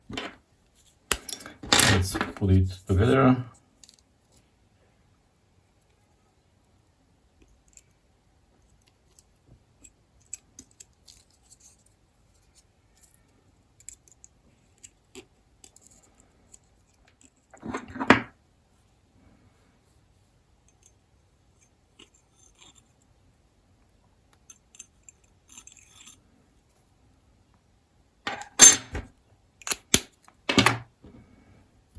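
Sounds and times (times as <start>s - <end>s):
pocket knife parts clinking: 28.3s - 29.0s
metal rattle: 28.3s - 29.1s.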